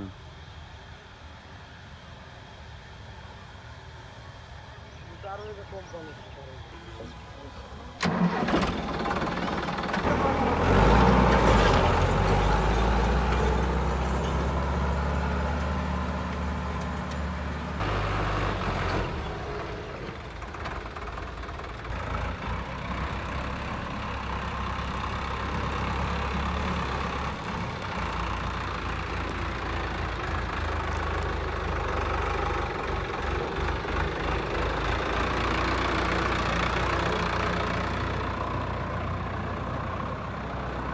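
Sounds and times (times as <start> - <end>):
engine starting and revving: 8.0 - 15.7.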